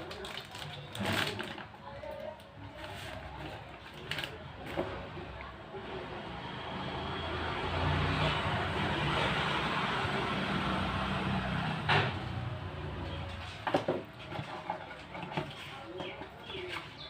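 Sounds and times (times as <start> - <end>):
motor vehicle passing: 5.7 - 15.0.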